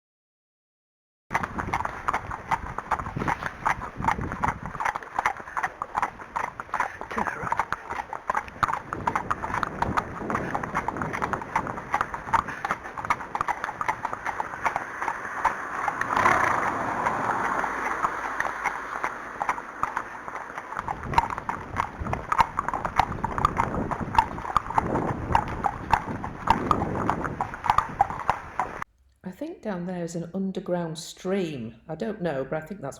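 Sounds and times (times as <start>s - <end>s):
horse hooves clip-clopping: 1.3s - 28.8s.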